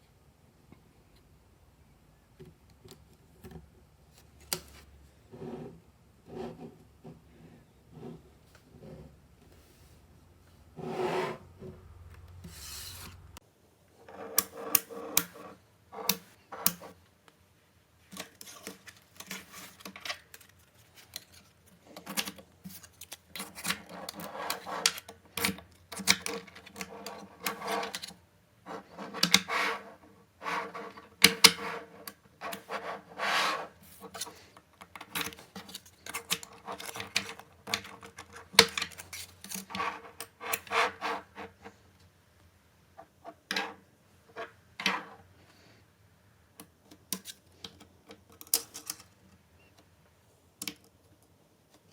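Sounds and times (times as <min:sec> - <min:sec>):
balls rubbing and scraping: 0:04.7 - 0:13.4, 0:14.0 - 0:17.0, 0:28.6 - 0:34.6, 0:35.4 - 0:41.8.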